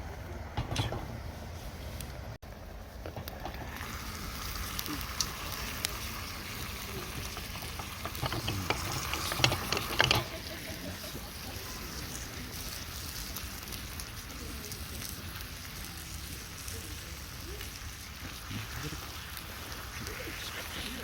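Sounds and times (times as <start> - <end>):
fire crackling: 0.0 - 21.0
food sizzling in a pan: 2.8 - 21.0
scraping and clatter: 7.1 - 10.7.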